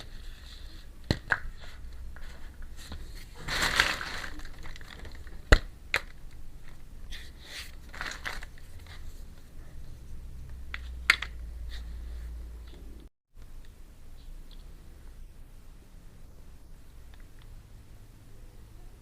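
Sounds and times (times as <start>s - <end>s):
packaging rustling: 2.2s - 6.8s, 7.6s - 9.2s.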